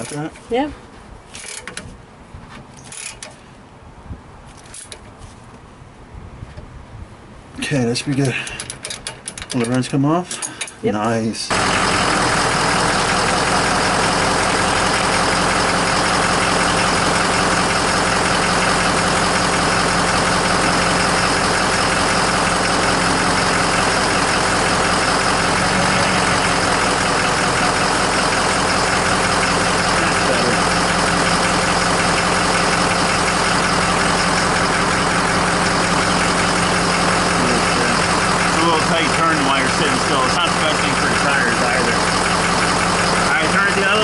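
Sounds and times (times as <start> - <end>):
diesel engine idling: 11.5 - 44.0.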